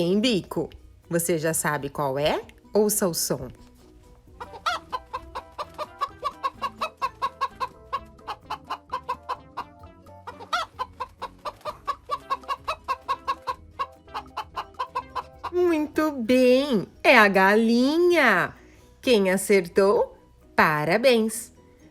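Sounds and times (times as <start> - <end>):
hen clucking: 4.3 - 15.7
hen squawk: 4.4 - 9.7, 10.3 - 15.5.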